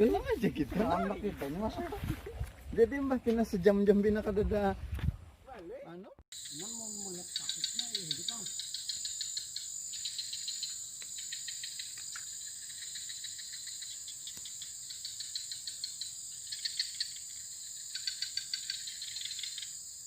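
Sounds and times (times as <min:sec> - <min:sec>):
insects chirping: 0:06.3 - 0:20.0.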